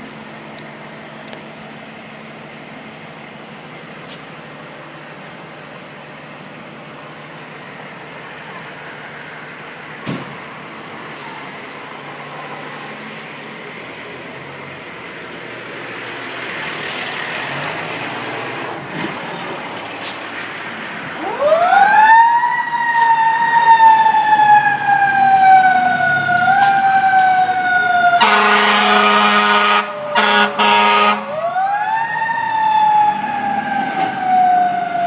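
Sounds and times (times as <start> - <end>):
fire engine engine running: 0.0 - 35.0
mechanical siren wailing: 21.2 - 35.0
vehicle horn: 28.2 - 31.3.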